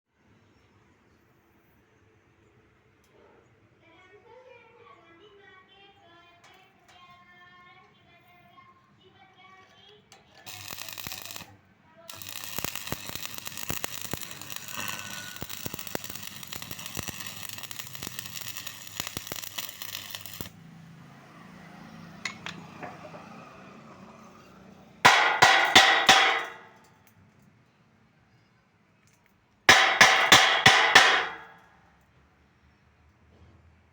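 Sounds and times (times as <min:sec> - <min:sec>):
welding arc crackling: 0:10.3 - 0:20.6, 0:25.1 - 0:26.6, 0:29.7 - 0:31.5.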